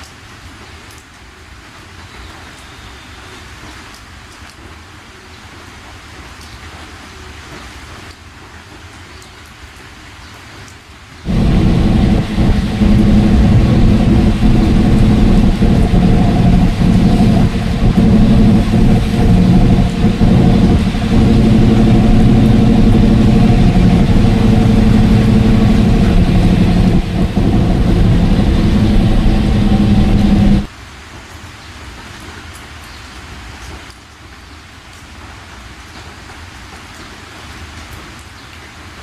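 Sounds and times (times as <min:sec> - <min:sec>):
vehicle engine running: 0:11.3 - 0:30.7.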